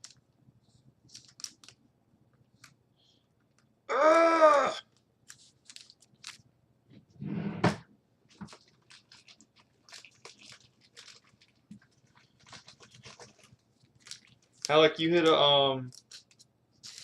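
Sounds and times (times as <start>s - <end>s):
cards and sleeves rustling: 5.2s - 6.4s, 8.3s - 17.0s.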